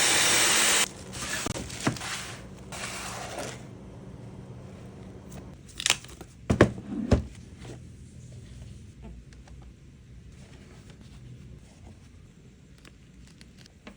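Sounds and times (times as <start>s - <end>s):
hair dryer blowing: 0.0s - 2.2s.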